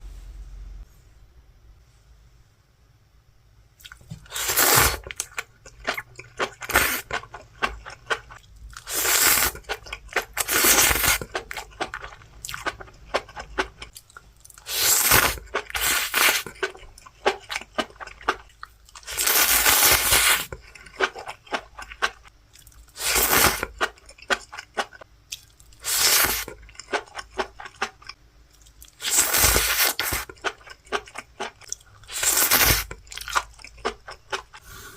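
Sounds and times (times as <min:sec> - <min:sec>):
person chewing crunchy mushrooms: 0:03.8 - 0:34.9.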